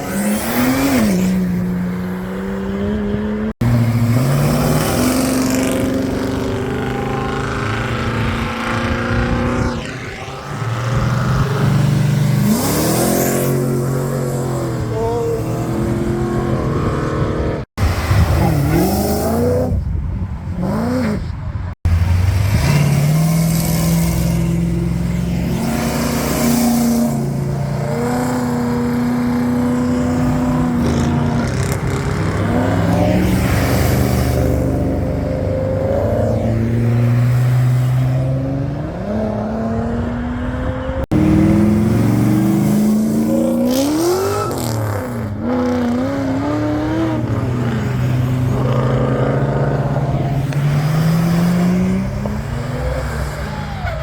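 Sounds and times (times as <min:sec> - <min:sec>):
car engines revving: 0:00.0 - 0:54.0.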